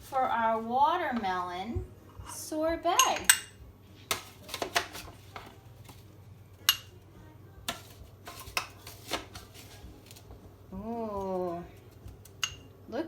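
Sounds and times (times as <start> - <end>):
utensil clinking on kitchenware: 2.2 - 7.0, 7.7 - 10.2, 12.2 - 12.7.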